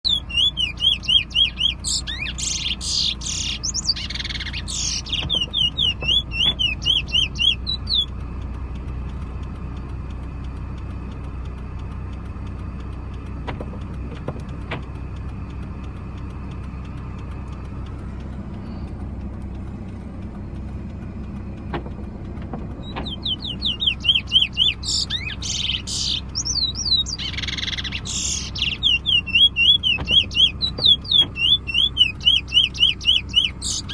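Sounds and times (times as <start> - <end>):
bullfinch chirping: 0.0 - 8.3, 22.7 - 33.9
low vehicle rumble: 0.0 - 33.9.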